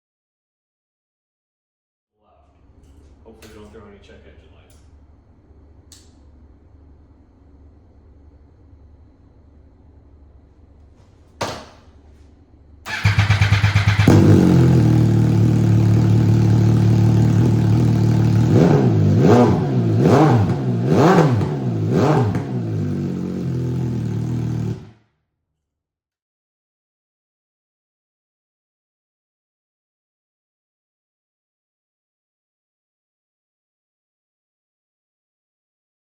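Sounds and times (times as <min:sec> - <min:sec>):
starter cranking: 0:12.9 - 0:14.5
motorcycle engine revving: 0:12.9 - 0:25.0.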